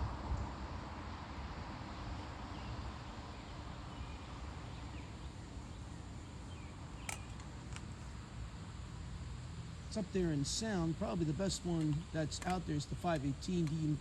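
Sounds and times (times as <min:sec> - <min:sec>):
sharp click: 0:07.0 - 0:07.8.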